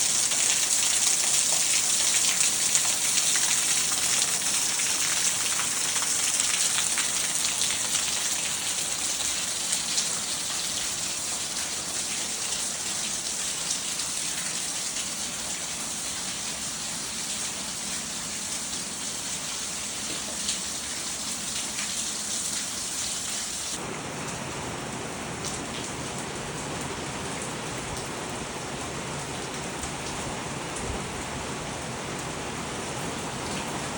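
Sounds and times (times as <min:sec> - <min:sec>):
raindrops ticking: 0:00.0 - 0:15.8
steady rainfall: 0:00.0 - 0:33.9.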